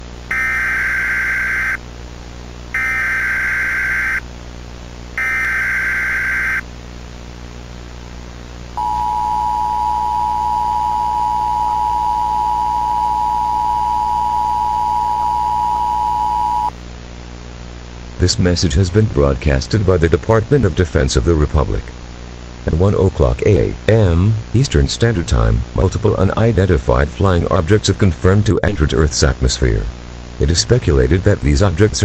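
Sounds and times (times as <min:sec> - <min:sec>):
low hum: 0:00.0 - 0:18.2
raspy data bursts: 0:00.3 - 0:01.8, 0:02.8 - 0:04.2, 0:05.2 - 0:06.6
two-tone attention signal: 0:08.8 - 0:16.7.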